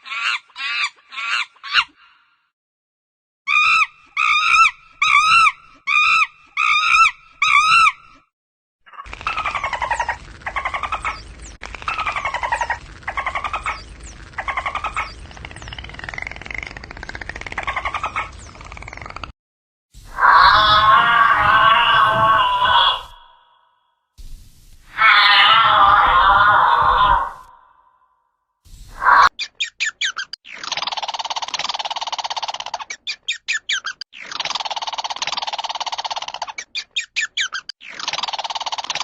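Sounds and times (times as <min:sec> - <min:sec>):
rasping animal calls: 0:08.9 - 0:18.5, 0:20.1 - 0:23.7, 0:24.9 - 0:28.0
short pitched animal calls: 0:20.1 - 0:23.8, 0:24.9 - 0:28.1.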